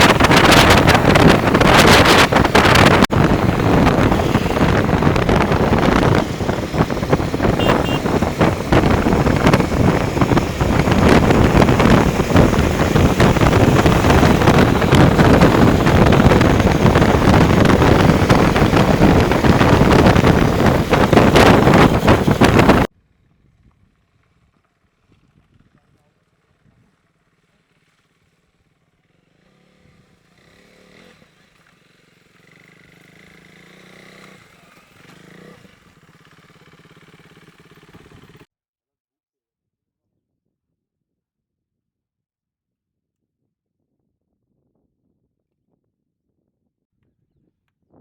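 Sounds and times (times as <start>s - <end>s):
wind rushing over microphone: 0.0s - 23.8s
motorcycle engine running: 0.0s - 38.5s.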